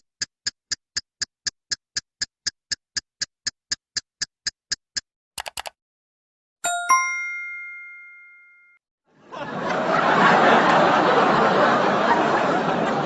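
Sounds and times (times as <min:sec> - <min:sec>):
bright bell ding: 0:06.6 - 0:08.8
crowd chatter: 0:09.4 - 0:13.0.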